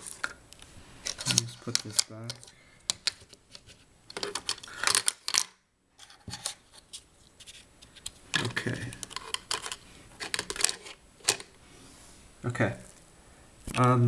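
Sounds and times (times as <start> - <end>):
small objects clicking and rattling: 1.0 - 6.6, 8.0 - 11.6.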